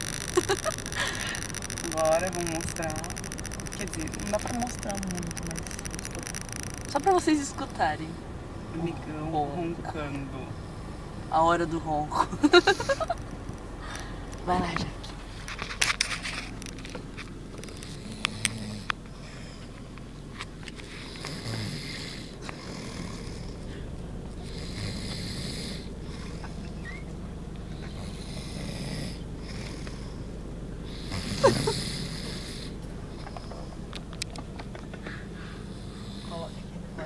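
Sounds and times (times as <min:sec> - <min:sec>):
rasping snoring: 0:17.5 - 0:19.7, 0:20.8 - 0:23.8, 0:24.4 - 0:27.0, 0:27.7 - 0:30.3, 0:30.9 - 0:32.8, 0:35.5 - 0:37.0.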